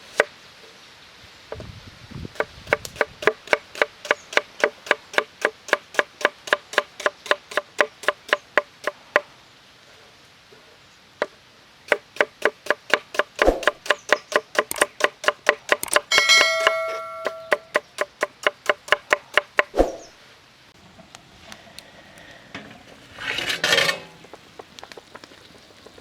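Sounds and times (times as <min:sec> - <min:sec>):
knife chopping on wooden board: 0:02.4 - 0:09.0, 0:11.9 - 0:20.0.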